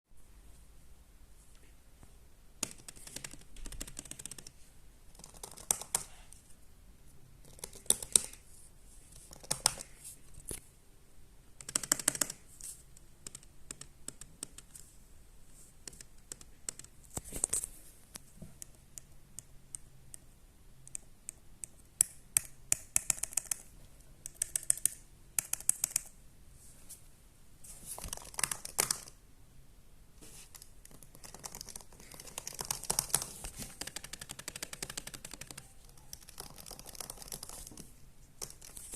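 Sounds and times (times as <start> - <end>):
laptop keyboard typing: 2.6 - 6.2, 7.4 - 8.4, 9.1 - 10.6, 11.6 - 14.9, 15.8 - 17.6, 20.8 - 26.2, 28.0 - 29.2, 30.5 - 38.9.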